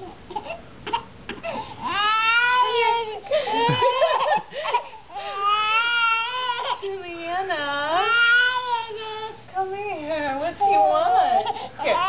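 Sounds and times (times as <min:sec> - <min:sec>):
toddler crying: 0:00.4 - 0:06.9, 0:10.6 - 0:12.0.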